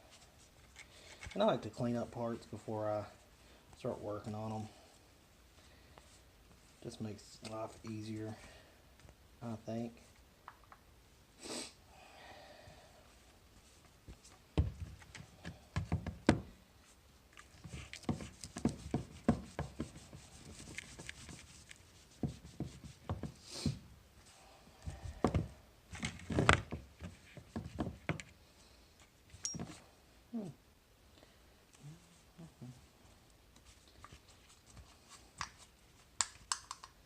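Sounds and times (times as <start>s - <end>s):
short hiss: 11.4s - 11.8s.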